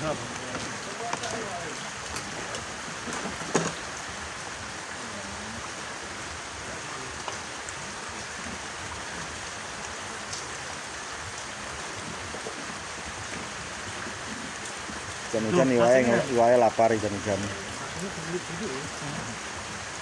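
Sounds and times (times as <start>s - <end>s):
steady rain hiss: 0.0s - 20.0s.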